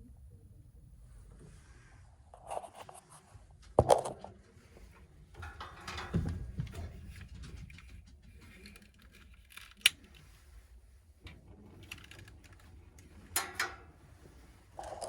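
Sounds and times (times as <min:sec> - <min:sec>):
gas furnace igniter clicks: 0:13.4 - 0:13.8.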